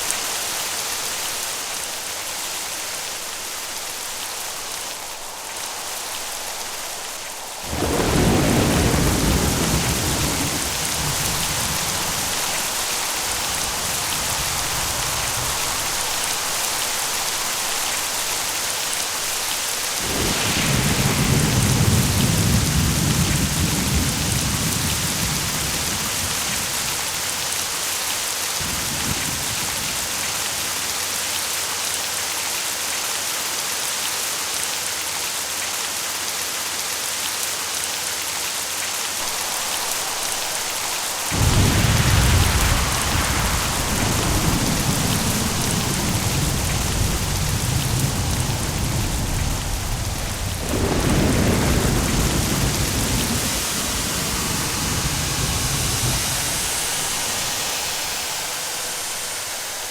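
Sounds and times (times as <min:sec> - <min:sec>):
heavy rain falling: 0:00.0 - 0:59.9
rolling thunder: 0:03.8 - 0:27.6, 0:28.6 - 0:30.6, 0:39.2 - 0:59.9.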